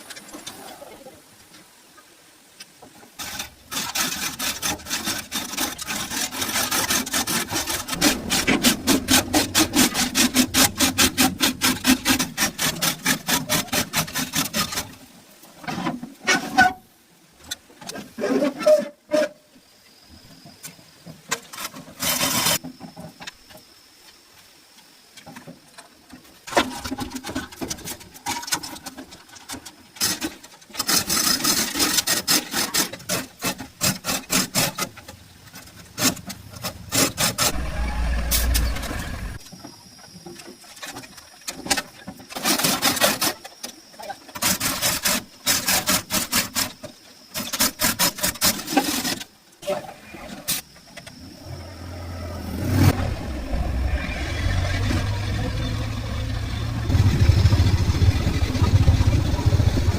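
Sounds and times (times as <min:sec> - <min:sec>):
rapid scraping strokes: 0:03.2 - 0:15.1, 0:29.5 - 0:39.4
low rumble: 0:07.7 - 0:11.1, 0:37.4 - 0:39.4.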